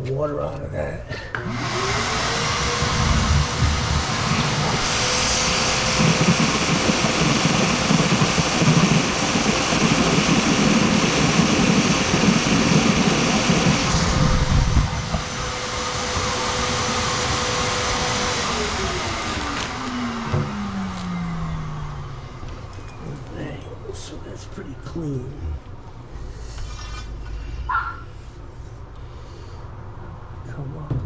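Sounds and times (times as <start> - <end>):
vacuum cleaner running: 1.2 - 26.0
rushing hiss of suction: 1.5 - 20.0.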